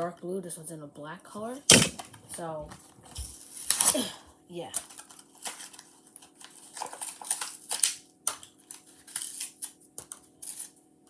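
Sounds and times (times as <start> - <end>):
plastic blister packs clicking and crinkling: 4.7 - 10.3.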